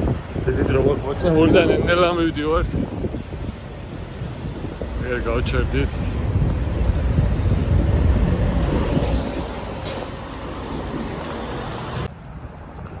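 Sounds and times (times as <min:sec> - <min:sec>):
semi-truck rumbling: 0:00.0 - 0:12.1
hiss: 0:04.2 - 0:12.1.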